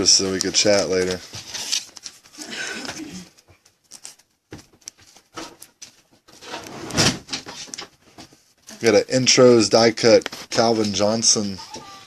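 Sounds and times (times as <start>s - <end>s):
cards and wrappers handled: 0.0s - 6.6s.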